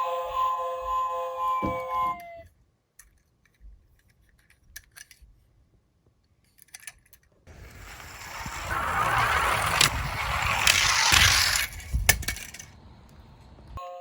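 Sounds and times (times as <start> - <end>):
toy cars clicking and clinking: 3.0 - 5.3, 6.4 - 13.4
toy car rolling down track: 7.5 - 13.4.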